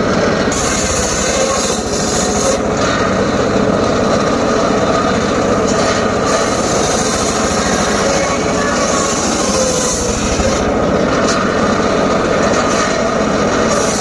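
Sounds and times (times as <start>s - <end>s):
circular saw cutting wood: 0.0s - 14.0s.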